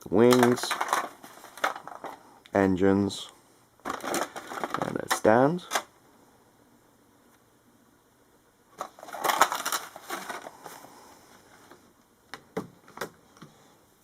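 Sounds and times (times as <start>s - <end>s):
packaging rustling and crinkling: 0.2s - 2.3s, 3.8s - 5.9s, 8.8s - 11.8s.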